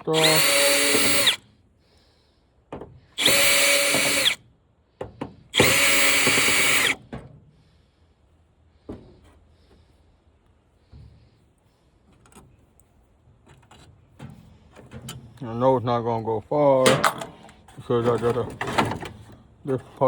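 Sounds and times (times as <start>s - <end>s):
power drill spinning: 0.0s - 1.4s, 3.2s - 4.4s, 5.6s - 7.0s.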